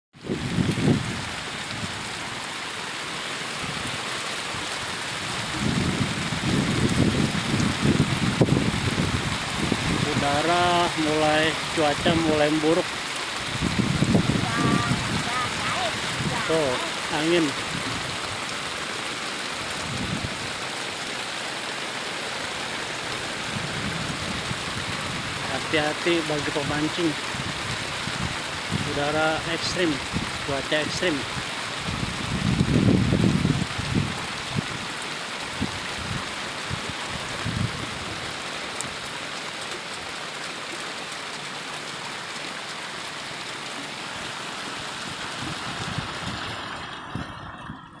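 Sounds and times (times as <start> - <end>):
strong wind rushing: 0.2 - 2.0, 5.0 - 10.3, 13.5 - 16.9, 19.8 - 20.6, 23.4 - 25.4, 31.8 - 34.7, 37.1 - 38.2, 45.4 - 48.0
rain falling: 0.2 - 48.0.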